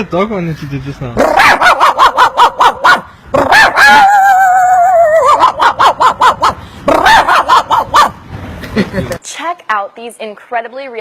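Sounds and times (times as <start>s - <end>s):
man imitating dog whine: 1.2s - 8.1s
man imitating dog yaps: 1.2s - 8.2s.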